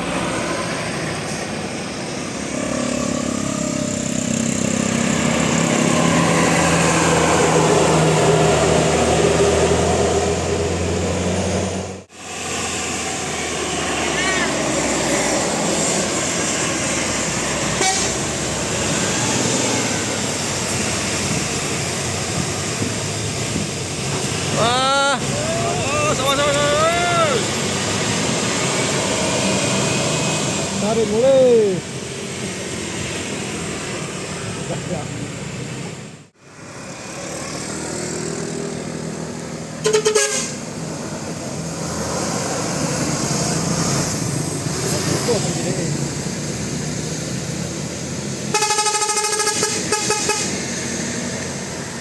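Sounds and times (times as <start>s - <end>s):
large vehicle passing: 0.0s - 39.8s, 40.5s - 52.0s
road traffic rushing: 0.0s - 52.0s
pulsing bus horn toot: 17.8s - 18.2s, 39.8s - 40.7s, 48.5s - 50.6s.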